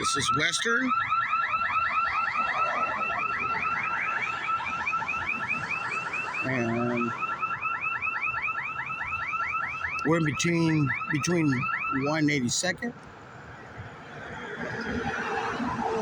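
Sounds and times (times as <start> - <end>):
security alarm yelping: 0.0 - 12.8.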